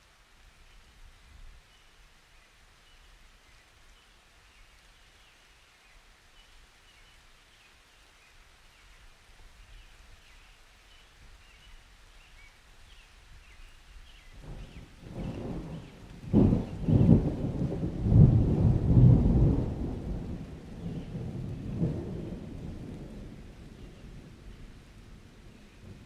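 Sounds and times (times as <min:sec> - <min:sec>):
light rain hiss: 0:00.0 - 0:26.0
thunder rumble: 0:14.4 - 0:26.0.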